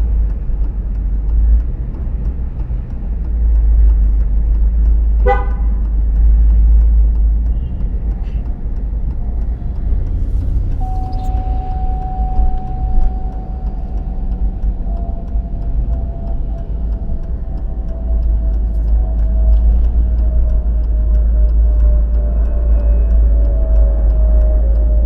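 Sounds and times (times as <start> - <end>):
road and engine rumble: 0.0 - 25.0
steady high whine: 9.2 - 21.5.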